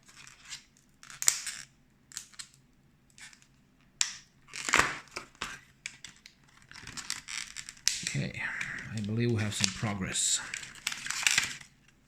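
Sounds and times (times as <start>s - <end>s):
plastic packaging crackling: 4.5s - 12.0s
sharp crack: 7.7s - 11.7s.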